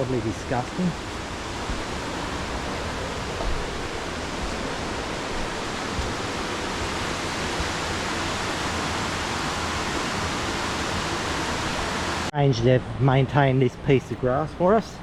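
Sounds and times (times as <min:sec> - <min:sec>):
waterfall roaring: 0:01.3 - 0:12.3.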